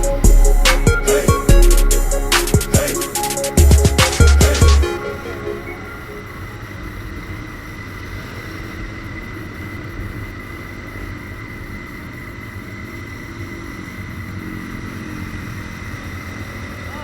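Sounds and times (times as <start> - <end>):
steady high whine: 0.0 - 8.3.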